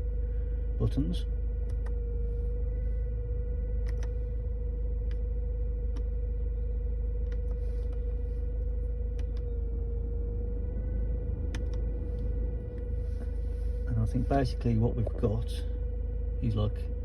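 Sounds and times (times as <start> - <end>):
diesel engine idling: 0.0 - 17.0
high-pitched whine: 0.0 - 17.0
dashboard buttons clicking: 3.8 - 4.1, 11.5 - 11.8.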